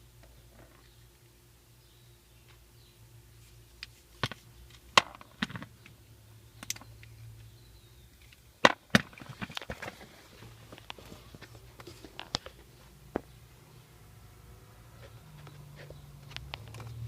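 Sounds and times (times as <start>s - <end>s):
faint low hum: 0.0s - 17.0s
hard objects clicking and knocking: 4.2s - 6.0s, 8.2s - 13.4s.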